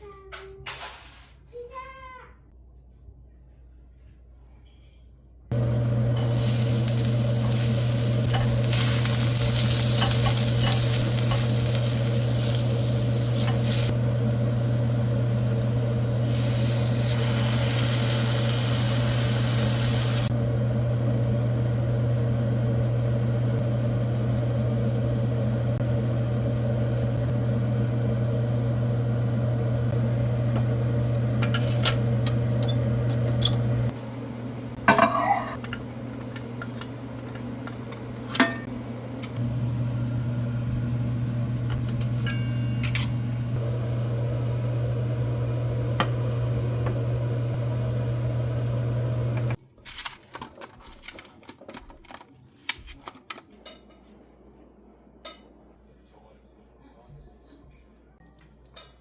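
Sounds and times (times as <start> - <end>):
steady low hum: 5.5 - 49.6
food sizzling in a pan: 5.6 - 20.3.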